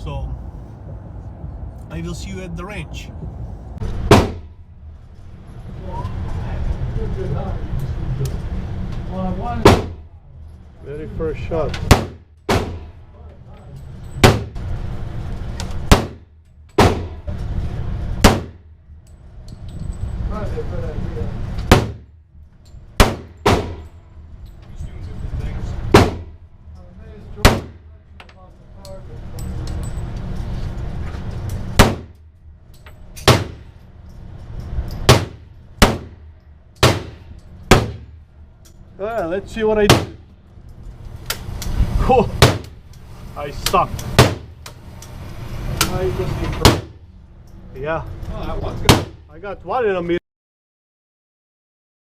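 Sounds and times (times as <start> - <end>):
pistol shots: 36.8 - 38.1.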